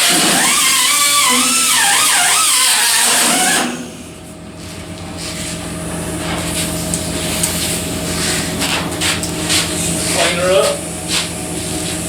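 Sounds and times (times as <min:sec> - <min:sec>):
power tool whining: 0:00.0 - 0:04.3
steady machine hum: 0:00.0 - 0:12.0.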